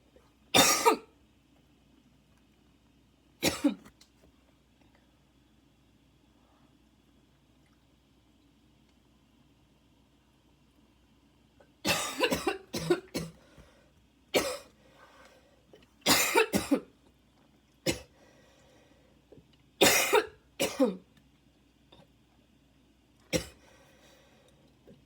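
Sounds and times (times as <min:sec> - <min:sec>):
woman coughing harshly: 0:00.6 - 0:01.1, 0:03.4 - 0:03.9, 0:11.9 - 0:13.4, 0:14.4 - 0:14.7, 0:16.1 - 0:16.9, 0:17.9 - 0:18.1, 0:19.8 - 0:21.0, 0:23.3 - 0:23.6.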